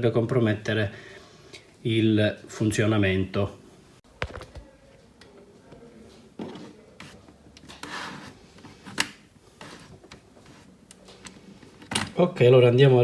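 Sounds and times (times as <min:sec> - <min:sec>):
plastic laptop parts rubbing and scraping: 0:06.4 - 0:11.9.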